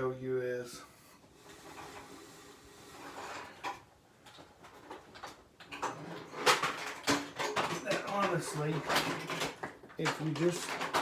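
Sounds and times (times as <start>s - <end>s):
plastic clicks and knocks: 3.6s - 11.0s.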